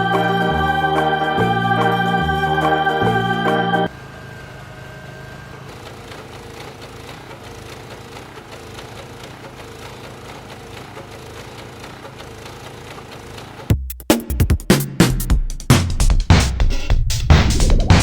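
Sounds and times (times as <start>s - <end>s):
motor running with rapid flutter: 5.7s - 13.7s.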